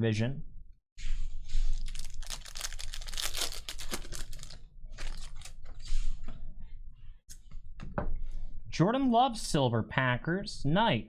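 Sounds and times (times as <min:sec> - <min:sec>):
foil wrappers crinkling: 0:01.7 - 0:05.5
card packs being torn open: 0:01.8 - 0:05.5.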